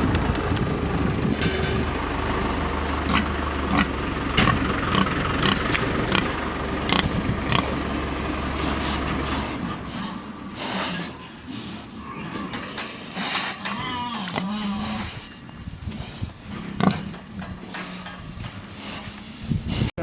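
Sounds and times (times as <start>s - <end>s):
low engine hum: 0.0s - 11.9s.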